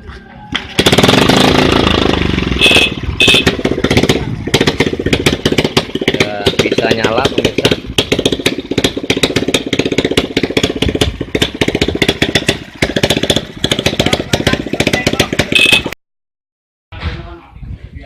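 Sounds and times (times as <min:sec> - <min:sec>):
motorcycle engine idling: 0:00.5 - 0:16.0
short high tone: 0:15.5 - 0:16.0.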